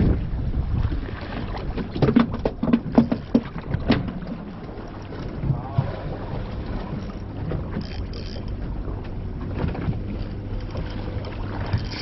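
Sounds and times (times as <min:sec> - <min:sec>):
wind buffeting microphone: 0:00.0 - 0:04.5, 0:05.1 - 0:12.0
boat engine low hum: 0:00.0 - 0:12.0
water noise: 0:00.0 - 0:12.0.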